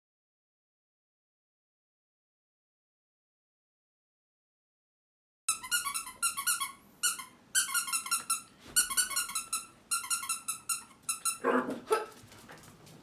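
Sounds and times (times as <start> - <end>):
squeaky dog toy squeaking: 5.5 - 11.5.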